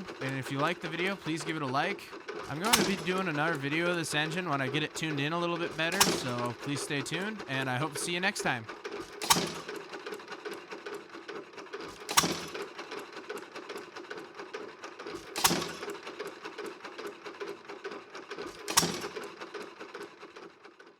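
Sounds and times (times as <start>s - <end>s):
engine clattering while coasting: 0.0s - 20.9s
engine firing bang: 2.6s - 3.2s, 5.8s - 6.5s, 9.2s - 9.7s.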